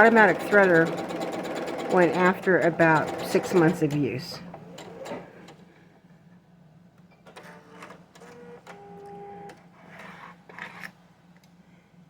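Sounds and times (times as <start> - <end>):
sewing machine running: 0.0 - 5.6.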